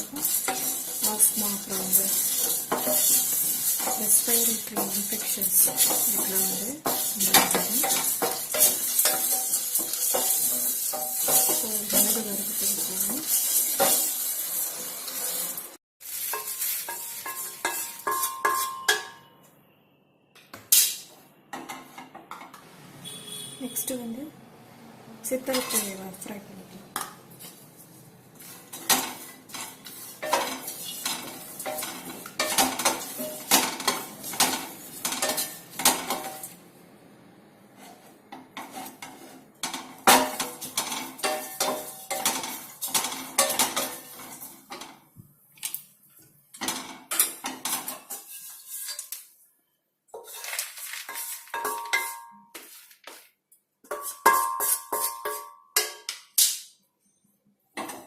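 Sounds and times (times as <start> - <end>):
utensil scraping a pan: 0.0 - 18.9, 27.0 - 36.5, 37.7 - 44.9, 47.2 - 49.2, 50.2 - 53.2, 53.8 - 55.5.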